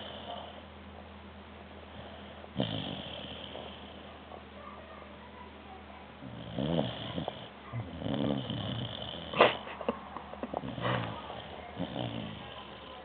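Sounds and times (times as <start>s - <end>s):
puppy snoring: 0.0s - 0.6s, 1.9s - 4.1s, 6.2s - 9.8s, 10.5s - 13.0s.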